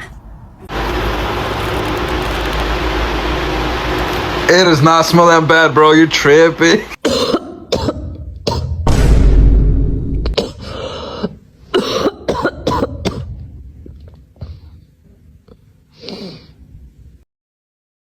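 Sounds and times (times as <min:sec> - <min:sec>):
person coughing: 0:07.0 - 0:08.8, 0:10.3 - 0:13.4.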